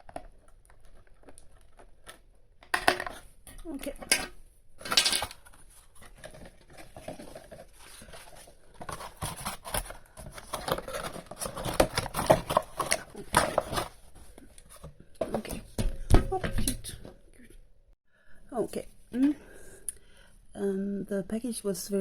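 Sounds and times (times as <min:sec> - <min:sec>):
packaging rustling and crinkling: 0:00.0 - 0:02.4, 0:05.2 - 0:14.9.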